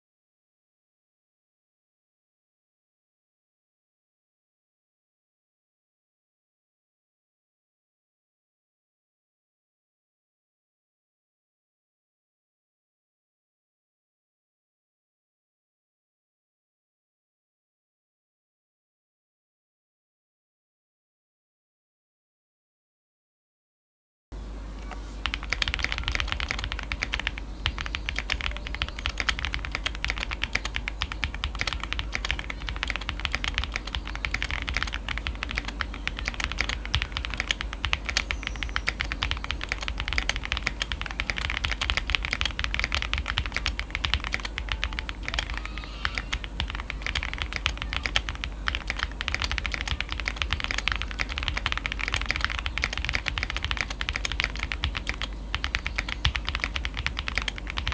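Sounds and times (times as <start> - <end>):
mechanical keyboard typing: 24.4 - 57.9.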